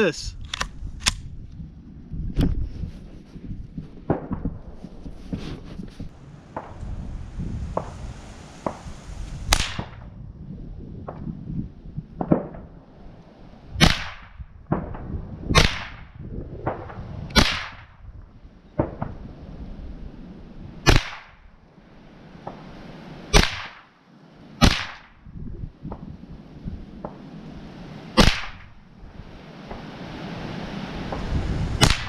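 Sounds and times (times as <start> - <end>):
rifle shots cracking: 28.2 - 28.7, 31.8 - 32.0.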